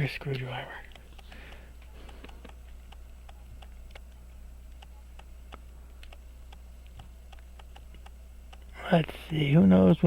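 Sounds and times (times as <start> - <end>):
low electrical hum: 0.0 - 10.0
clock ticking: 4.7 - 9.6.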